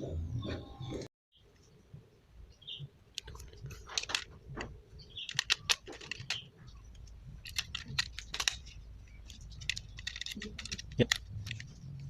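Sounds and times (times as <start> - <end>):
plastic parts clicking: 3.1 - 12.0.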